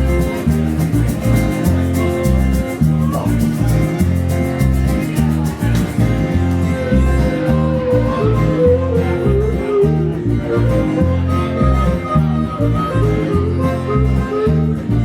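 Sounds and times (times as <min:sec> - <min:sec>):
blues band playing: 0:00.0 - 0:15.0
lead melody with bent notes: 0:00.0 - 0:15.0.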